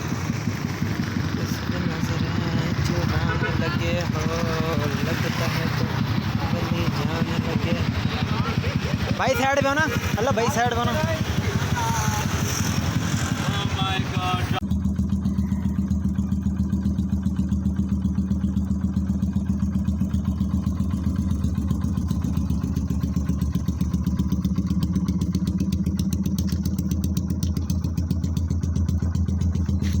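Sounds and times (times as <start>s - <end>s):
motorcycle engine idling: 0.0s - 30.0s.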